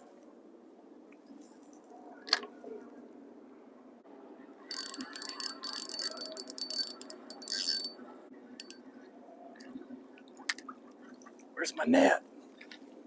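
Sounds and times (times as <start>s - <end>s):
fishing reel clicking: 4.7s - 8.0s, 8.6s - 8.8s.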